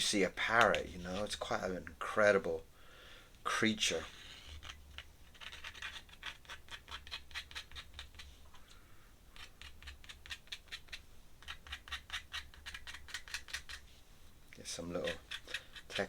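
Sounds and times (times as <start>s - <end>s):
pen scratching on paper: 4.1s - 8.0s.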